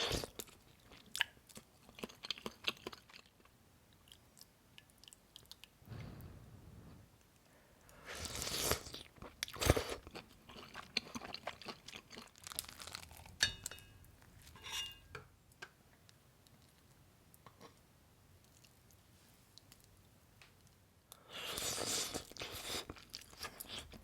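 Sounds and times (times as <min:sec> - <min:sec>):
crunching and chewing food: 0:00.0 - 0:05.8, 0:08.1 - 0:13.4, 0:21.4 - 0:24.0.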